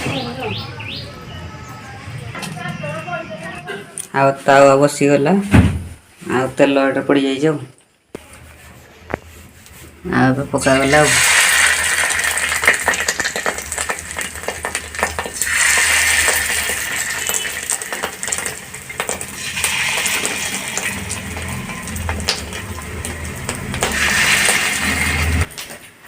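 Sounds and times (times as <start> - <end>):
patties sizzling in hot oil: 10.6 - 25.8.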